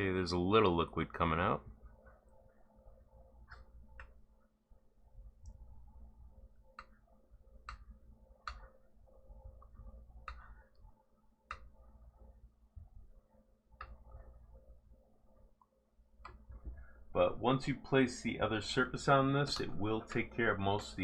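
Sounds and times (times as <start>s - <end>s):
faint low hum: 0.0s - 21.0s
small clicks and taps: 3.4s - 4.2s, 6.7s - 7.0s, 7.6s - 8.8s, 9.5s - 10.8s, 11.5s - 11.8s, 13.8s - 14.3s, 15.6s - 16.9s.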